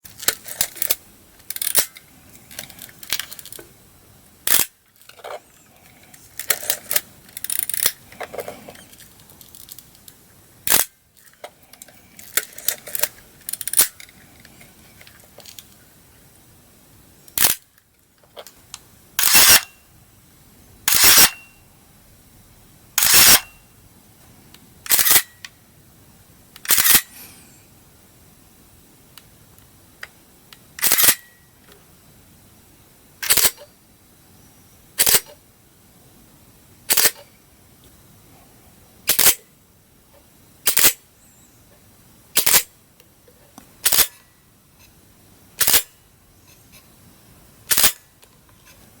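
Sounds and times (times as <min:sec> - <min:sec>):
camera shutter clacks: 0:10.7 - 0:10.9, 0:17.4 - 0:17.6, 0:19.2 - 0:19.7, 0:20.9 - 0:21.4, 0:23.0 - 0:23.5, 0:24.9 - 0:25.4, 0:26.6 - 0:27.1, 0:30.8 - 0:31.3, 0:36.9 - 0:37.2, 0:42.4 - 0:42.7, 0:43.9 - 0:44.1, 0:47.7 - 0:48.0.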